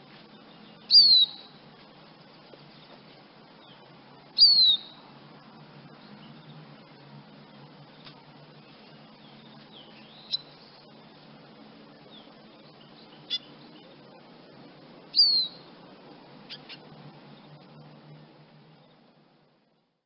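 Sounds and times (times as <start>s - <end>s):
bird chirping high calls: 0.4s - 1.6s, 3.6s - 5.0s, 8.6s - 11.0s, 12.0s - 14.2s, 15.1s - 15.7s, 16.4s - 16.9s.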